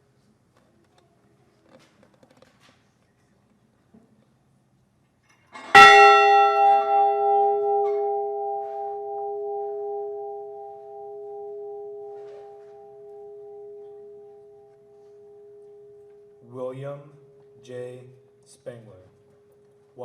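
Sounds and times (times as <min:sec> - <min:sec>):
bell struck and ringing: 0:05.6 - 0:16.6.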